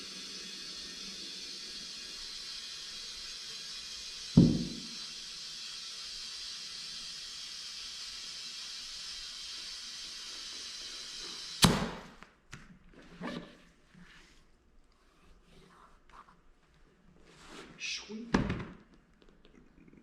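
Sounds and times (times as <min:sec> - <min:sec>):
compressed air hissing into tire: 0:00.0 - 0:12.2.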